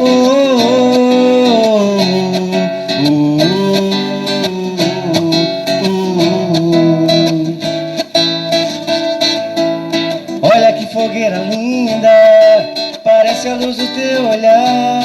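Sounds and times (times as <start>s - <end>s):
guitar melody: 0.0s - 15.0s.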